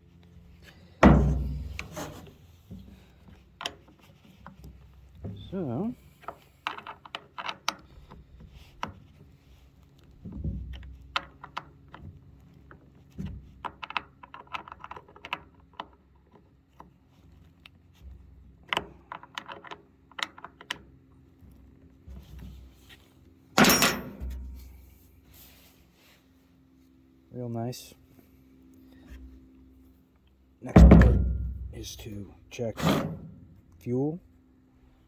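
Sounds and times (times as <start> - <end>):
dull thumps: 1.0 - 1.8, 30.7 - 31.8.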